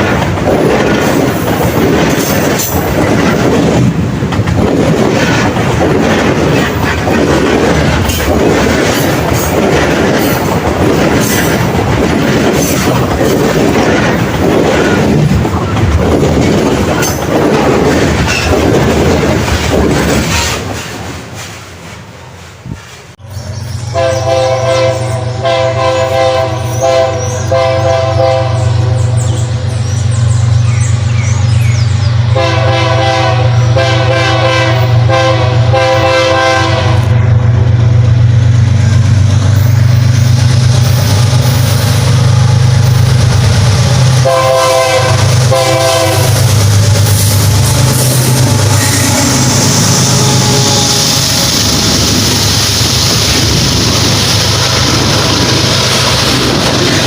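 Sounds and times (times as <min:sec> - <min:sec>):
train rolling noise: 0:00.0 - 0:57.0
locomotive engine droning: 0:23.2 - 0:57.0
train horn short blasts: 0:23.9 - 0:29.1, 0:32.3 - 0:37.2, 0:44.2 - 0:46.4, 0:48.0 - 0:51.0.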